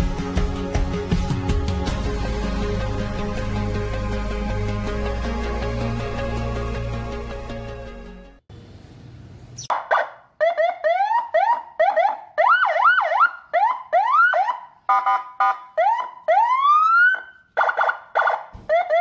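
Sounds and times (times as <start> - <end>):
electronic vehicle siren: 9.7 - 19.0.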